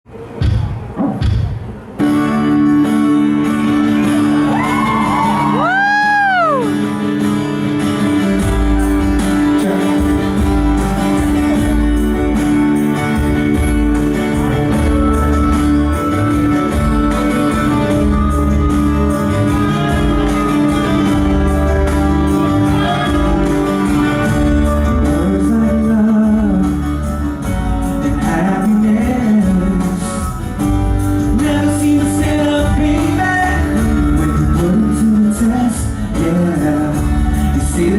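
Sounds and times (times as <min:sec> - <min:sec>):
high sliding whoop: 0:04.4 - 0:06.8
heavy bass line: 0:08.3 - 0:37.9.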